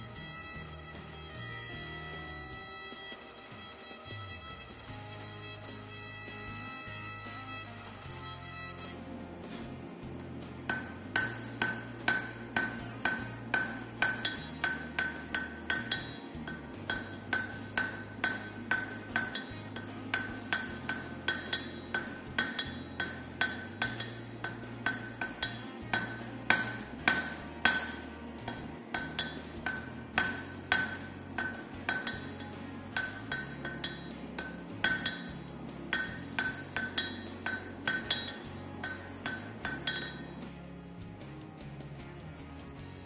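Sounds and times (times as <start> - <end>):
hammer striking steel on anvil: 9.4 - 40.6.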